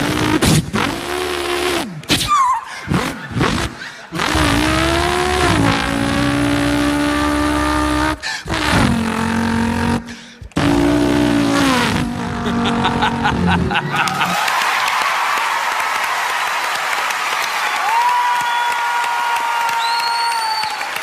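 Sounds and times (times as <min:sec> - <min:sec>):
man imitating racing car engine: 0:00.0 - 0:14.4.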